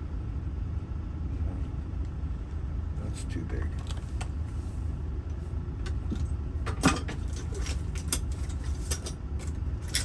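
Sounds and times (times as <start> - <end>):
steady low rumble: 0.0 - 10.0
small metal tools clinking: 6.8 - 10.0.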